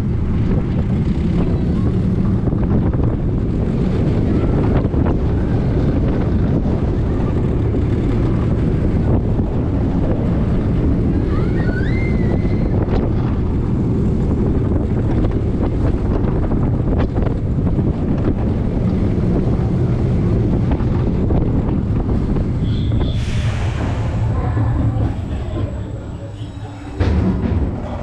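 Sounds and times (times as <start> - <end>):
roller coaster rumbling on track: 0.0 - 28.0
wind rushing over microphone: 0.0 - 28.0
high gliding squeals: 22.6 - 28.0.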